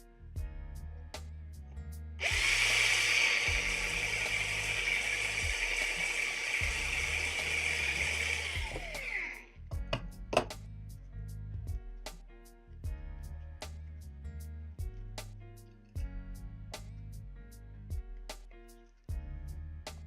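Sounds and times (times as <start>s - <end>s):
small electric drill running: 2.2s - 9.5s.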